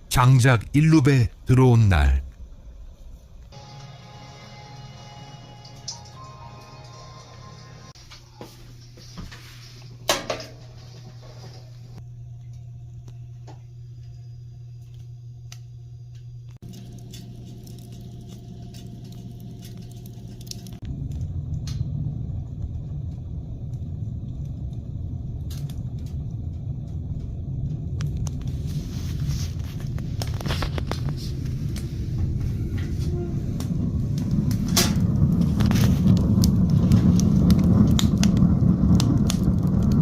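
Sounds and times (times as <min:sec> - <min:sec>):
low rumble: 0:00.0 - 0:03.6, 0:12.0 - 0:40.0
wood fire crackling and popping: 0:14.8 - 0:40.0.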